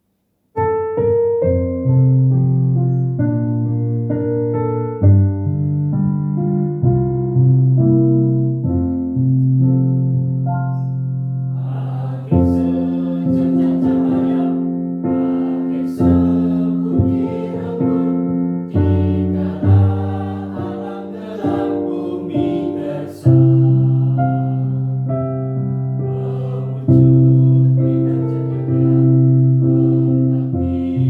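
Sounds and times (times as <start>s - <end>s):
children's choir singing: 11.6s - 31.0s.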